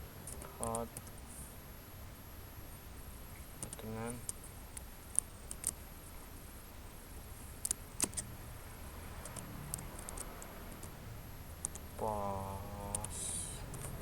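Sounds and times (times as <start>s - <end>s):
keyboard typing clicks: 7.6s - 8.3s, 9.2s - 11.0s, 11.6s - 11.9s
man humming: 12.0s - 13.7s.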